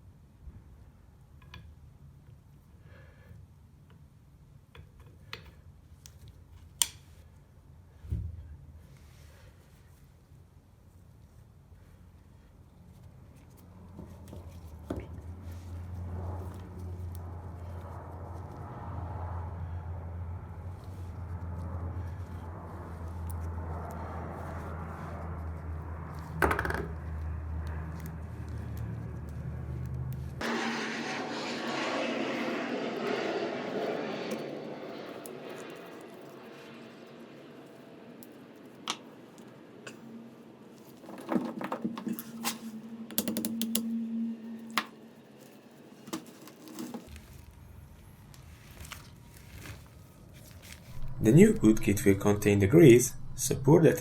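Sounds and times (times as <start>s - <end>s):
steady low hum: 15.3s - 40.9s, 50.9s - 54.0s.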